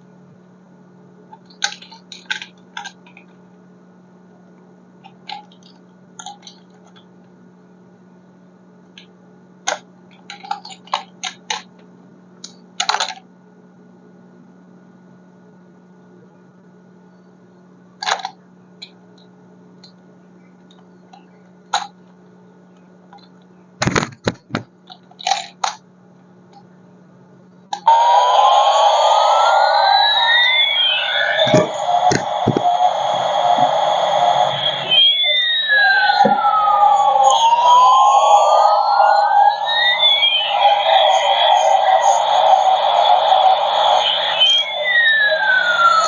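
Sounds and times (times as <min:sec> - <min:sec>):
steady low hum: 0:00.0 - 0:46.0
plastic toy cars clicking: 0:01.5 - 0:03.2, 0:05.2 - 0:07.0, 0:09.7 - 0:11.7, 0:12.8 - 0:13.2, 0:18.0 - 0:18.4, 0:24.9 - 0:25.8.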